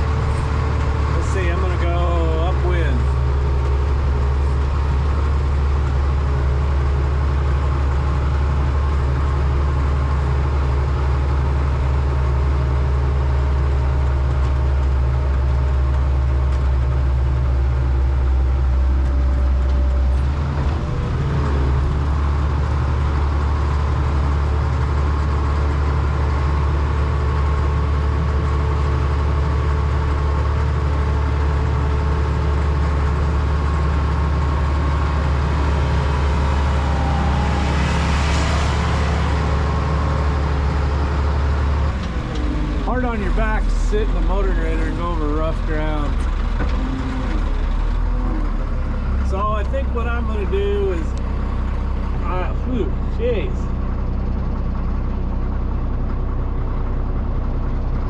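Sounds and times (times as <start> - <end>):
diesel engine running under load: 0.0 - 58.0.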